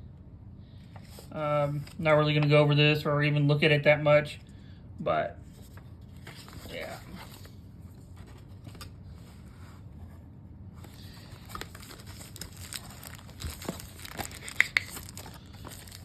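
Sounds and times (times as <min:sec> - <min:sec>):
packaging crinkling: 0:10.8 - 0:16.0.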